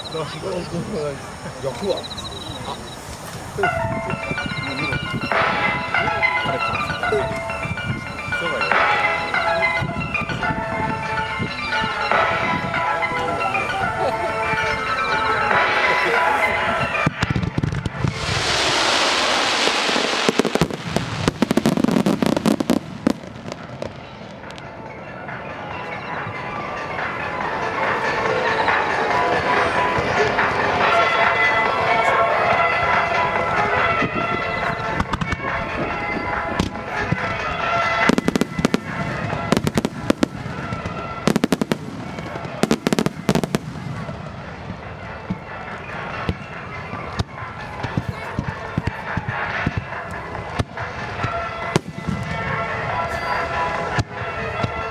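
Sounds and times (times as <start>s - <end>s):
fireworks hissing: 0.0s - 24.0s
fireworks bangs and crackles: 0.0s - 54.9s.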